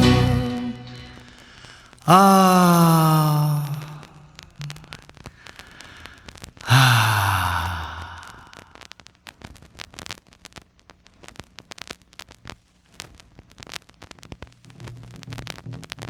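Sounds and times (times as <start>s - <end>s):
low music tones: 0.0s - 1.4s
vinyl crackles and pops: 3.8s - 6.7s, 8.2s - 16.0s.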